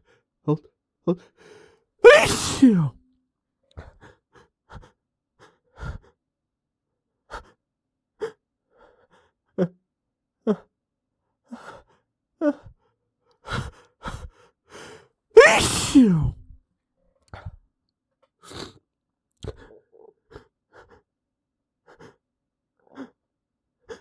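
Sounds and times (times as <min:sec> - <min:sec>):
man gasping breaths: 0:02.0 - 0:02.9, 0:15.4 - 0:16.3.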